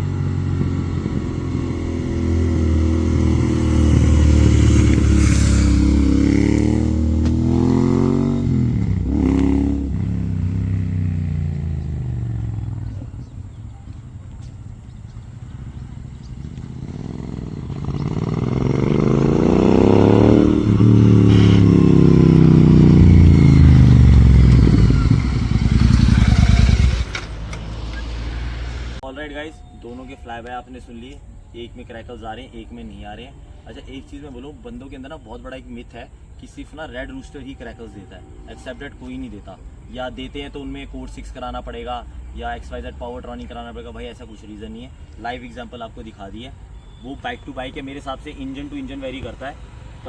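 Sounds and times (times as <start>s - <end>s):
motorcycles riding past: 0.0s - 29.0s.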